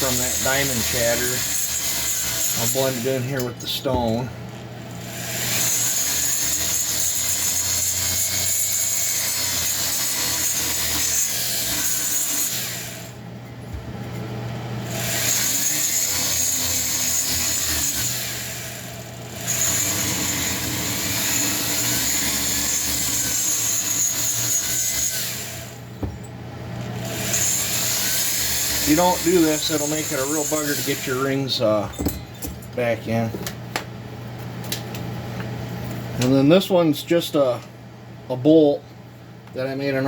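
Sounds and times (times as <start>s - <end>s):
rotary tool grinding with high whine: 0.0s - 4.2s, 4.9s - 13.2s, 14.8s - 25.9s, 26.8s - 31.7s.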